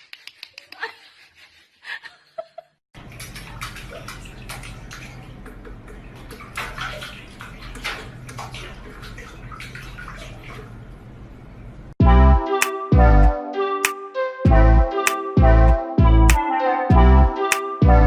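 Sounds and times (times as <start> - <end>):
water running and splashing: 3.0 - 11.0.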